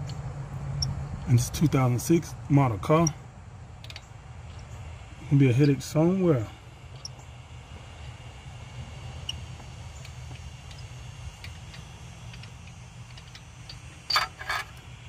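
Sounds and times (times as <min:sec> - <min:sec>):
steady low hum: 0:00.0 - 0:15.0
hand tools clicking on metal: 0:10.0 - 0:14.9
metal clank: 0:13.1 - 0:14.8.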